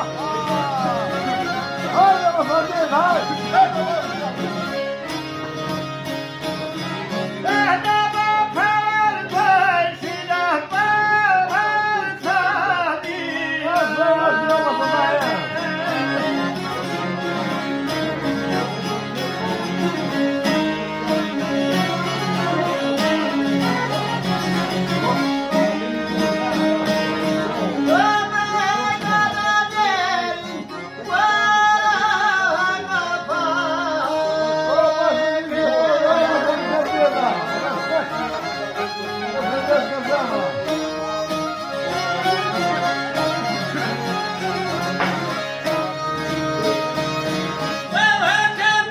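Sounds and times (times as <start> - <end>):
fiddle: 0.0 - 48.9
folk singing: 0.0 - 48.9
plucked strings: 0.0 - 48.9.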